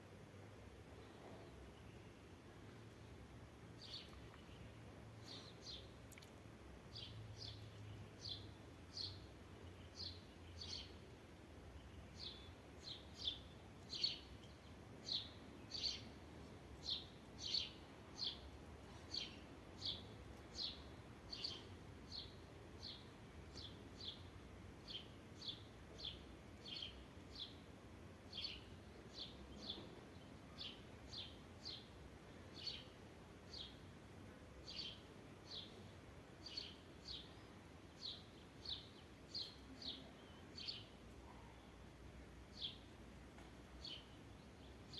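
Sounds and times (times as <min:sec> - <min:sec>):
low background hiss: 0:00.0 - 0:44.9.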